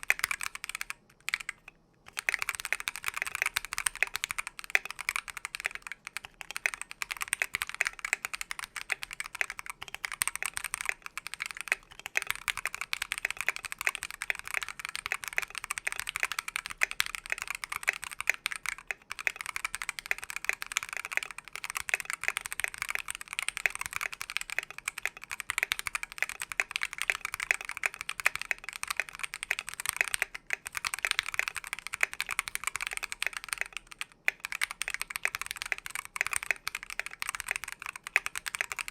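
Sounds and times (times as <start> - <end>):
fast keyboard typing: 0.0 - 38.9.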